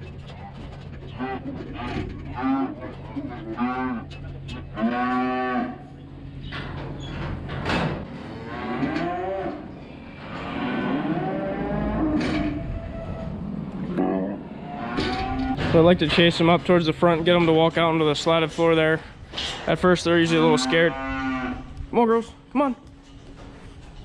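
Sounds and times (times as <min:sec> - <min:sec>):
calves mooing: 0:01.1 - 0:06.0, 0:08.1 - 0:13.2, 0:13.9 - 0:15.6, 0:20.2 - 0:21.8.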